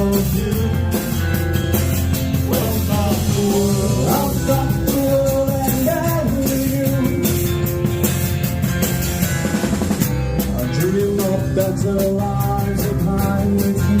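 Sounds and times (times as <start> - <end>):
person singing: 0.0 - 1.4, 2.4 - 7.8, 10.4 - 14.0
drum kit with cymbals: 0.0 - 14.0
live band playing rock: 0.0 - 14.0.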